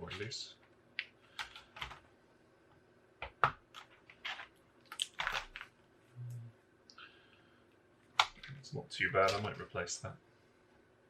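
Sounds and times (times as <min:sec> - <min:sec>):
keyboard and plastic clicks: 0:01.0 - 0:02.0.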